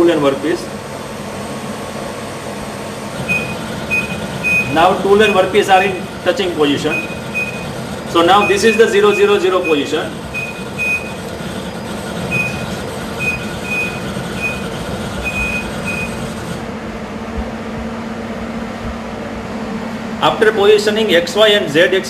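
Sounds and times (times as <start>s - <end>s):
steady electrical hum: 0.0s - 22.0s
short high machine beeps: 3.2s - 5.9s, 6.8s - 16.6s.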